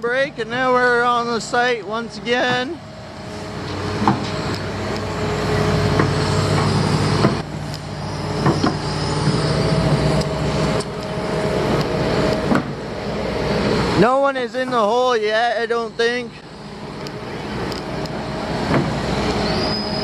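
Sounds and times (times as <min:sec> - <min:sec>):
heavy machinery engine running: 0:00.0 - 0:20.0
sharp knocks: 0:12.5 - 0:12.8.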